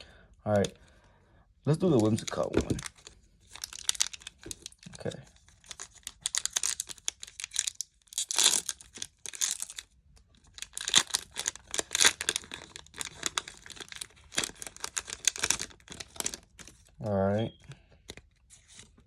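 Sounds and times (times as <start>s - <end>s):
foil wrapper tearing and crinkling: 1.8s - 17.0s.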